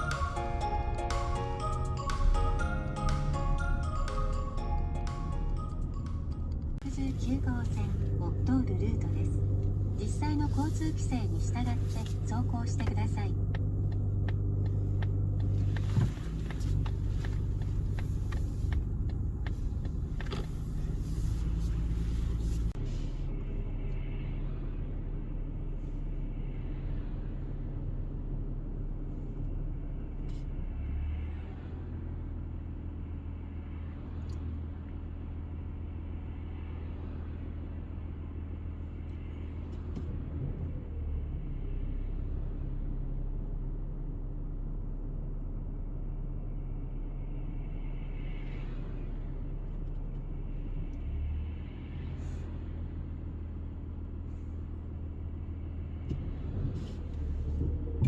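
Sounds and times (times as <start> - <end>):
car engine and road drone: 0.0 - 58.0.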